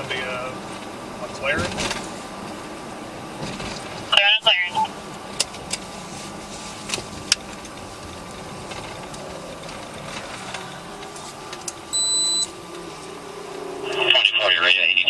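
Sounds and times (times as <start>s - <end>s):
car interior hum: 0.0s - 15.0s
loud electronic beep: 12.0s - 12.5s.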